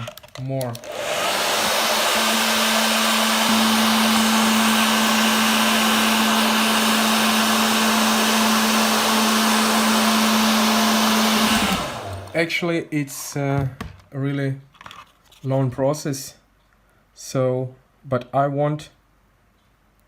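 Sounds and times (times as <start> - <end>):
hot-air blower running: 0.8 - 12.4.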